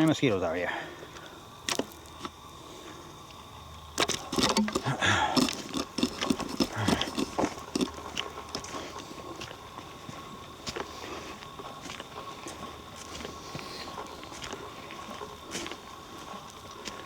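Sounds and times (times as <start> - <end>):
footsteps on woodland trail: 0.6 - 17.0.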